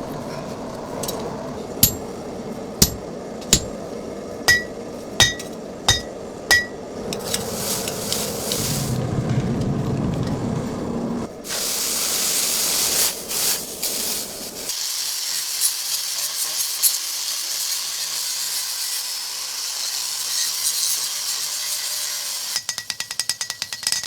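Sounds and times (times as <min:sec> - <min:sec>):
hot iron sizzling in water: 0:04.5 - 0:09.0, 0:11.4 - 0:22.7.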